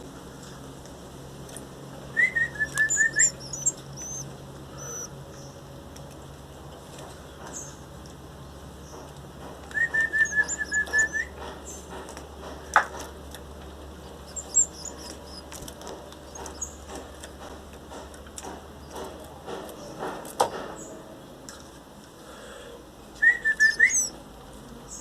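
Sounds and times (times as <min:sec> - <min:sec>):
whistled notes: 0:02.1 - 0:04.3, 0:09.7 - 0:11.4, 0:23.2 - 0:24.2
bird chicks chirping: 0:02.1 - 0:06.3, 0:07.1 - 0:18.1, 0:23.2 - 0:24.2.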